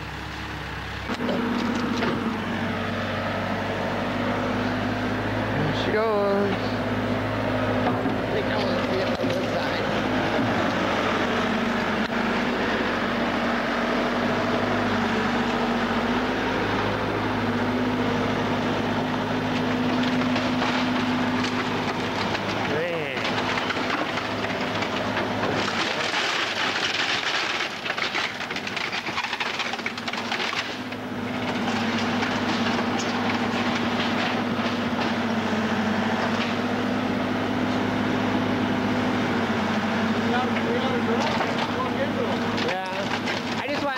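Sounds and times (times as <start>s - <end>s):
engine humming steadily: 0.0s - 43.9s
debris cracking and snapping: 18.8s - 35.4s, 40.4s - 43.9s.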